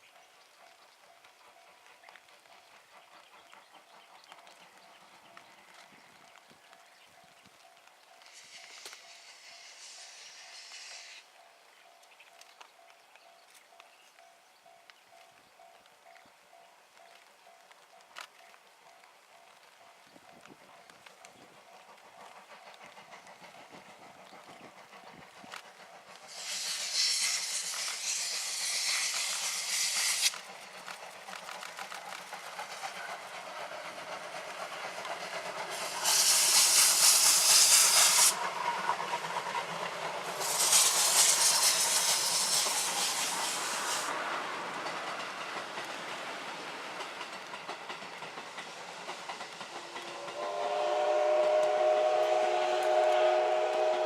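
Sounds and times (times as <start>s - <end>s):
train rumbling: 0.0s - 54.0s
steam hissing: 8.2s - 11.3s, 21.9s - 54.0s
steam whistle chord: 50.1s - 54.0s.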